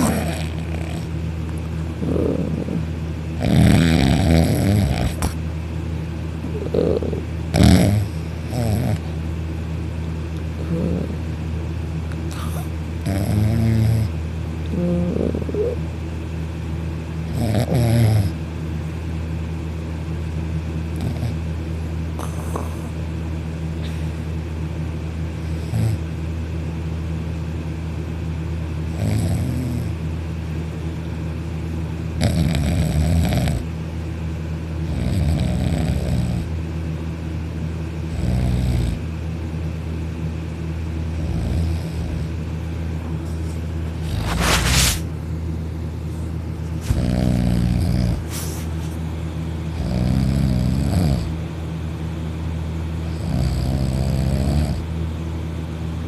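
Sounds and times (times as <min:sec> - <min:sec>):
man snoring: 0:00.0 - 0:01.1, 0:02.0 - 0:05.4, 0:06.5 - 0:09.1, 0:10.6 - 0:11.3, 0:12.3 - 0:14.1, 0:14.7 - 0:15.8, 0:17.3 - 0:18.4, 0:25.5 - 0:26.0, 0:28.9 - 0:30.0, 0:32.2 - 0:33.6, 0:34.9 - 0:36.5, 0:38.1 - 0:39.0, 0:41.2 - 0:42.3, 0:46.9 - 0:48.3, 0:49.7 - 0:51.3, 0:53.1 - 0:54.8.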